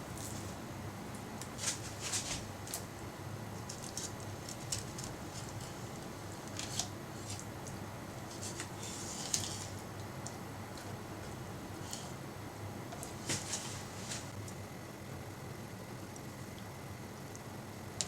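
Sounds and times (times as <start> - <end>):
low steady hum: 0.0 - 18.0
food preparation clicks and scrapes: 3.6 - 12.2.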